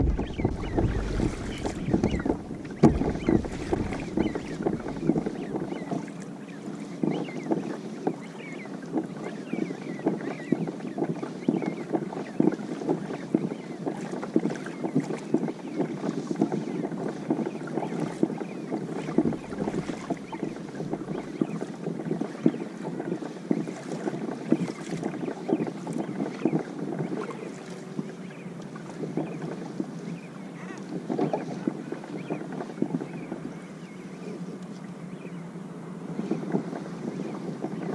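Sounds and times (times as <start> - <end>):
wind buffeting microphone: 0.0 - 6.0, 14.4 - 30.0, 36.0 - 37.9
water splashing against kayak hull: 0.0 - 37.9.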